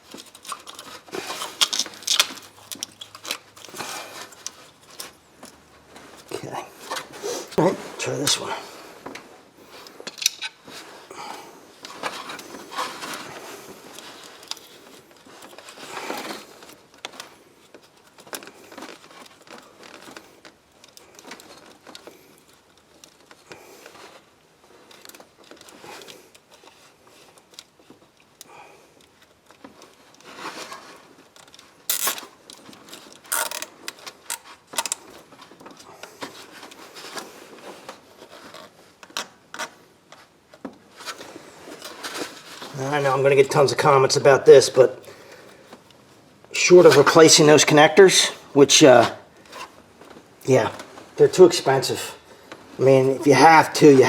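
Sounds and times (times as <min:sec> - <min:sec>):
cable ties clicking and rattling: 0:00.0 - 0:05.6, 0:31.4 - 0:36.8.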